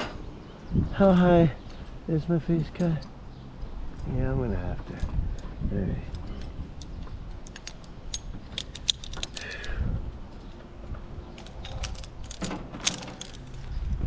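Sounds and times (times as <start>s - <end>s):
metal gear clinking: 6.3s - 9.8s, 11.3s - 13.7s.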